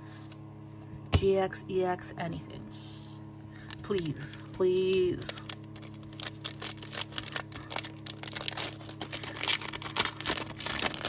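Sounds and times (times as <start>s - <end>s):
foil wrapper crinkling and tearing: 3.6s - 11.0s.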